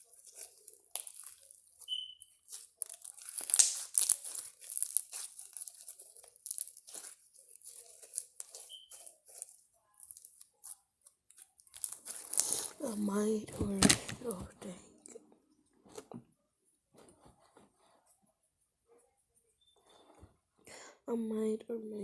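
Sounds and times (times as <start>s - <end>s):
slime squishing and popping: 0.0s - 10.5s, 11.7s - 12.7s.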